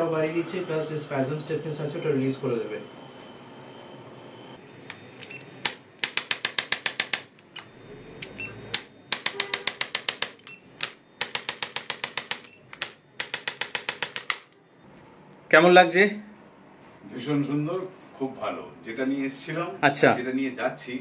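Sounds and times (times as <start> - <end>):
rapid mechanical clicks: 5.2 - 14.6.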